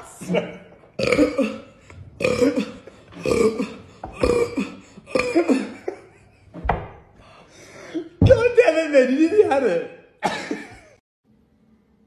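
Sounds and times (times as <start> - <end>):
person burping: 1.0 - 6.0.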